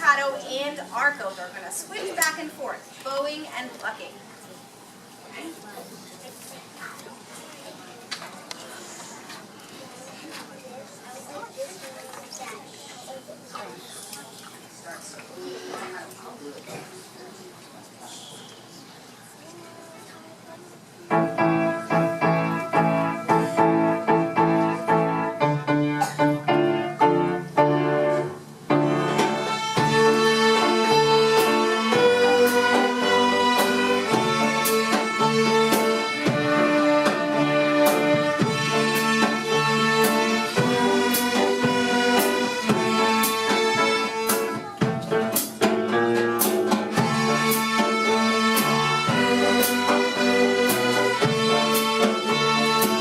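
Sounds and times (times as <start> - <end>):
string orchestra playing: 21.3 - 44.7, 46.2 - 53.0
bowed strings: 47.0 - 53.0.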